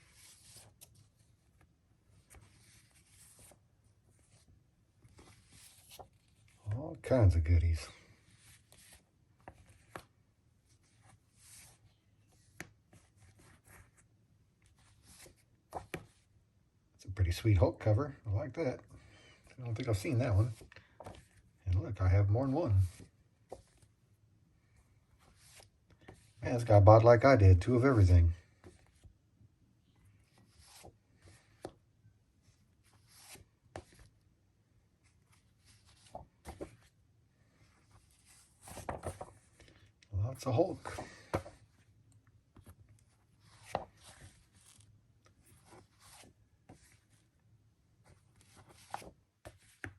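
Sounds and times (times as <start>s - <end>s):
rustling of paper: 0.0s - 6.7s, 35.0s - 42.0s, 42.6s - 47.3s, 48.0s - 49.9s.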